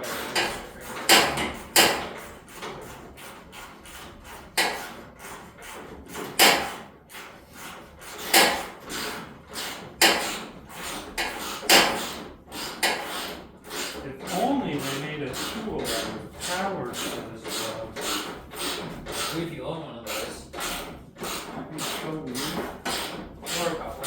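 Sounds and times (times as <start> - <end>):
loud metallic knocks: 0.0 - 19.5, 20.1 - 24.0.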